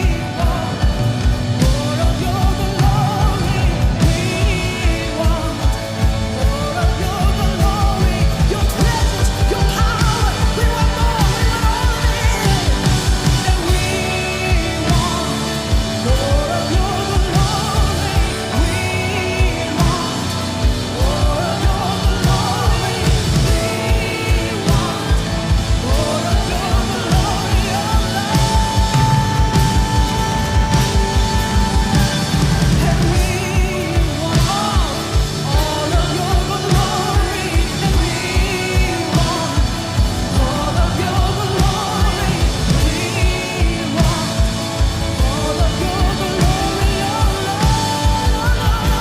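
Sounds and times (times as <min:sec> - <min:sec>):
driving drum beat: 0:00.0 - 0:49.0
live band playing: 0:00.0 - 0:49.0
person singing: 0:00.0 - 0:49.0.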